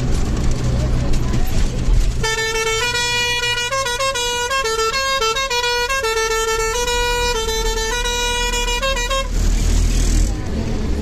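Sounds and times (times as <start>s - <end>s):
bus engine hum: 0.0s - 11.0s
bus musical horn tune: 2.2s - 9.5s.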